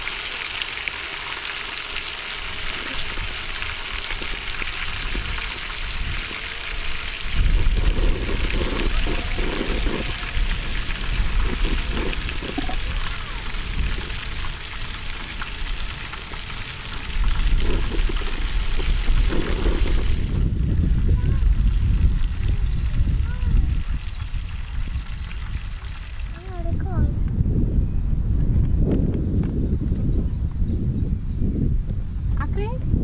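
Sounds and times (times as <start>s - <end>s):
chicken frying in oil: 0.0s - 27.1s
low buffeting rumble: 0.0s - 33.0s.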